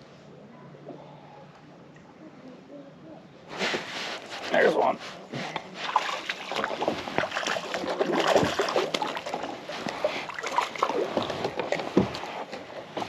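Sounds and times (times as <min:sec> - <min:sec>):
water splashing and sloshing: 0:03.5 - 0:13.0.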